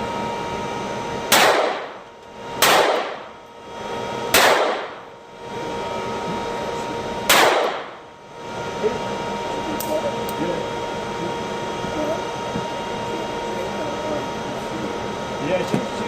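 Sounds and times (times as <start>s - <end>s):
gunshots: 1.3s - 1.9s, 2.6s - 3.2s, 4.3s - 5.0s, 7.3s - 7.9s.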